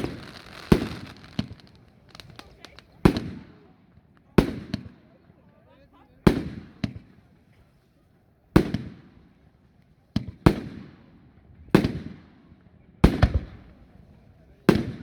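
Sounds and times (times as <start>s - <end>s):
fireworks bangs echoing: 0.0s - 3.5s, 13.0s - 15.0s
small firework crack: 0.0s - 5.2s, 13.0s - 15.0s.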